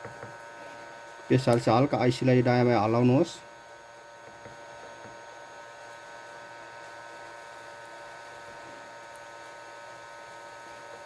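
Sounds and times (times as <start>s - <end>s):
hot air blower hissing: 0.0s - 7.6s
fan hum: 0.0s - 11.0s.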